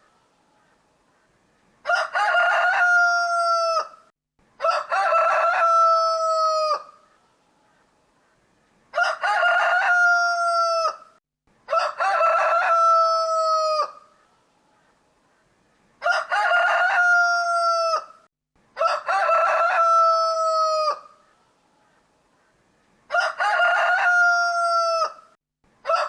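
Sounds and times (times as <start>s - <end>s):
rooster crowing: 1.8s - 7.0s, 8.9s - 14.0s, 16.0s - 18.2s, 18.8s - 21.2s, 23.1s - 26.0s.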